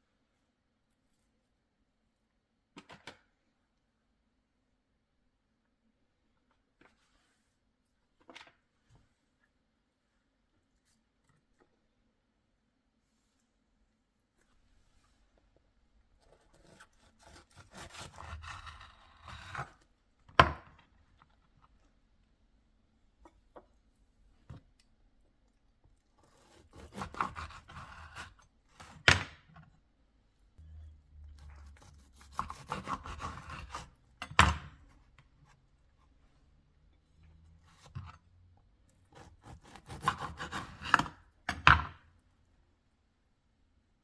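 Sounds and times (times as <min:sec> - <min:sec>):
knife sawing and crunching food: 0:16.2 - 0:19.8, 0:26.1 - 0:28.9, 0:31.2 - 0:34.0, 0:39.0 - 0:41.1.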